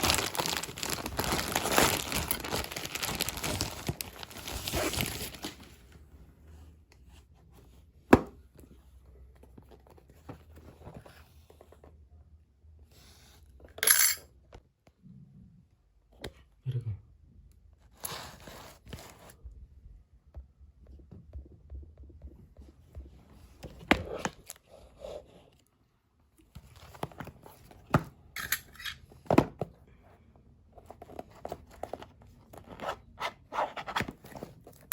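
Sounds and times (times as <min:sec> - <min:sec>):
packaging tearing and crinkling: 0:00.0 - 0:05.6.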